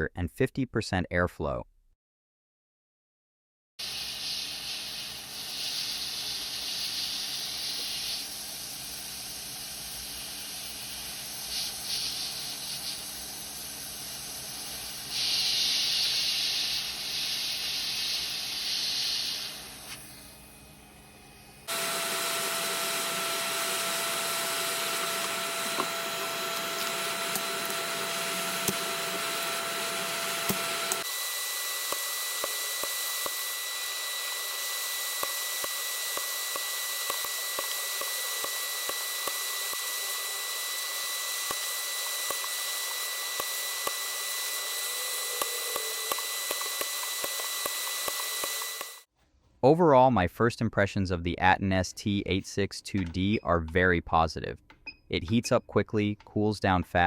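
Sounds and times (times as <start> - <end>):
hot air blower rushing: 21.7 - 49.1.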